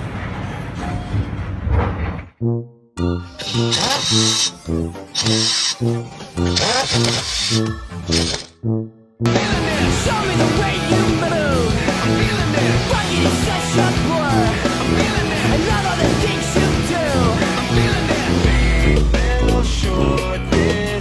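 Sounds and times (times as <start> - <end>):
loud rock music: 9.3 - 21.0.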